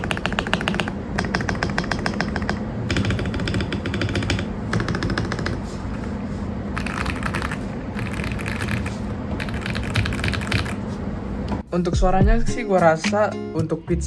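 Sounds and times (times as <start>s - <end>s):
mechanical keyboard typing: 0.0s - 5.6s, 6.8s - 10.8s.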